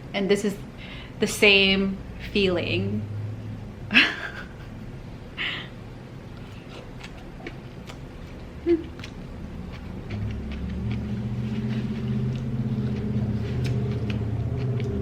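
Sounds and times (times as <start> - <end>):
chewing with mouth clicks: 6.4 - 15.0.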